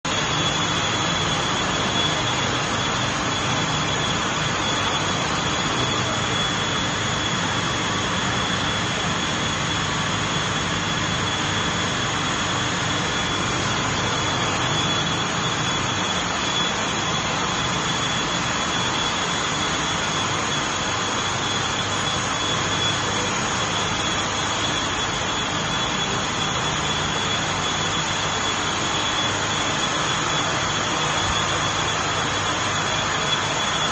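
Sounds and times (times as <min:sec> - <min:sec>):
machinery roar with high whine: 0:00.0 - 0:33.9.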